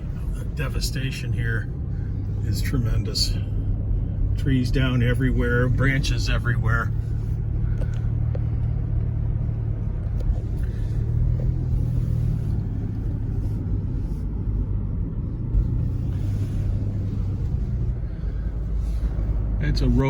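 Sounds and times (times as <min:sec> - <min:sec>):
car engine hum: 0:00.0 - 0:20.0
road rumble: 0:00.0 - 0:20.0.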